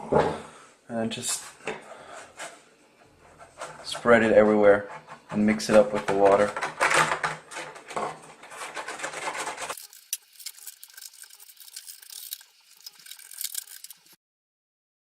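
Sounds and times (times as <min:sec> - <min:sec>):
stick scraping glue on plywood: 0:03.1 - 0:07.2.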